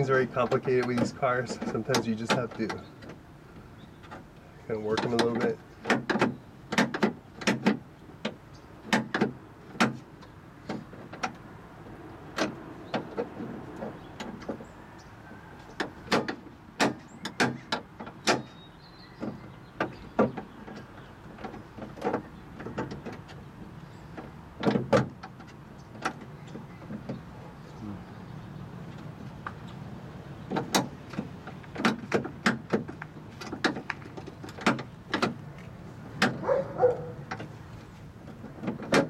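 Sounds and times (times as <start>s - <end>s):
car door lock clicks and knocks: 4.9s - 11.4s, 15.8s - 23.4s, 24.2s - 27.3s, 30.4s - 37.5s, 38.5s - 39.0s.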